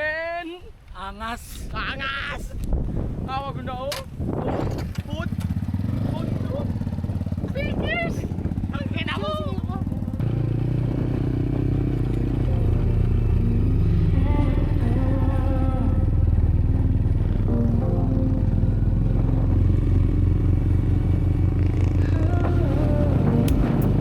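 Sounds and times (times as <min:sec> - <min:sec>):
small engine running: 0:05.2 - 0:17.7
music playing: 0:12.4 - 0:20.0, 0:22.4 - 0:24.0.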